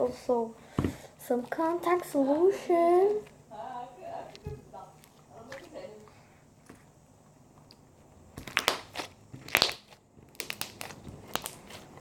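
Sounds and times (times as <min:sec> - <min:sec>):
slime crackling and popping: 0:08.4 - 0:12.0.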